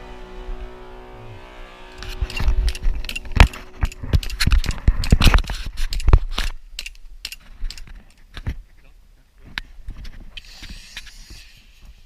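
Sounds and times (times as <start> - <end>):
background music: 0.0 - 4.3
sharp clicks knocks and rattles: 2.1 - 8.5.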